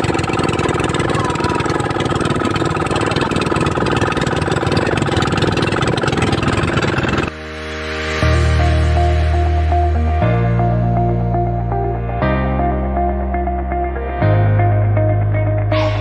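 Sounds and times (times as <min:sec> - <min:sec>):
boat engine pulsing: 0:00.0 - 0:07.3
music: 0:07.3 - 0:16.0.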